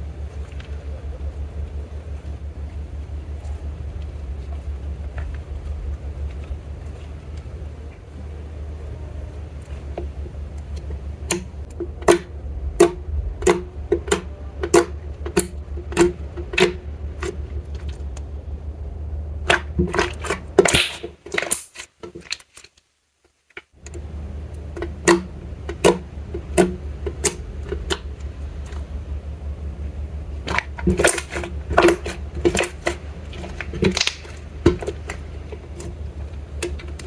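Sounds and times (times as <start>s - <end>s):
steady low hum: 0.0s - 21.6s, 23.7s - 37.0s
slime sticky clicks and pops: 20.7s - 21.8s.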